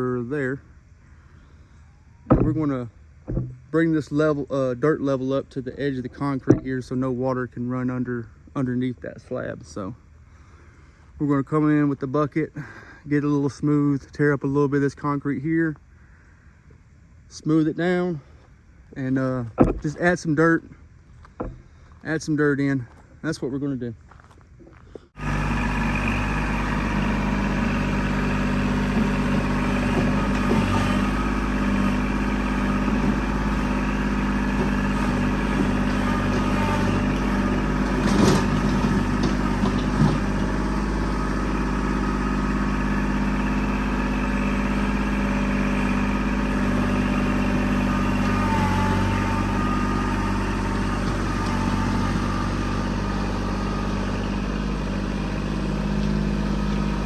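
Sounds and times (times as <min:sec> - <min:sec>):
tractor diesel engine running: 0:00.0 - 0:13.0, 0:18.2 - 0:22.2, 0:24.6 - 0:57.0
short knocks: 0:02.3 - 0:03.8, 0:06.4 - 0:06.8, 0:19.5 - 0:20.1, 0:21.3 - 0:21.7.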